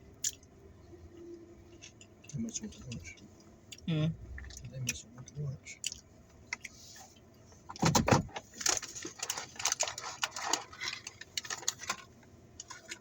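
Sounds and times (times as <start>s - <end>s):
paper bag and wrappers rustling: 8.5s - 12.1s.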